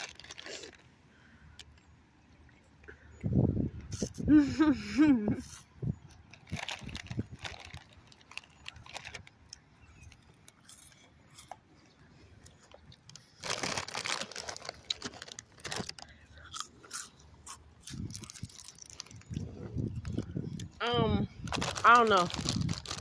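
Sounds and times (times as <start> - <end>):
person chewing crunchy snacks: 0.0 - 0.9, 5.6 - 11.7, 12.4 - 20.8, 21.4 - 23.0.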